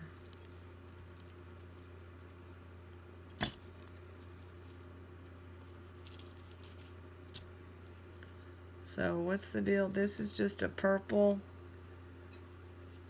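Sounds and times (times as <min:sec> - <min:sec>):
steady low hum: 0:00.0 - 0:13.0
jewelry clicking and rustling: 0:00.1 - 0:02.5, 0:05.6 - 0:08.2.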